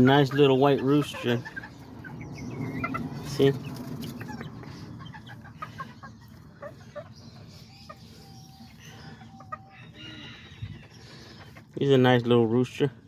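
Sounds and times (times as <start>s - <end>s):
chicken calls: 0.0s - 12.9s
chickens clucking softly: 0.0s - 12.9s.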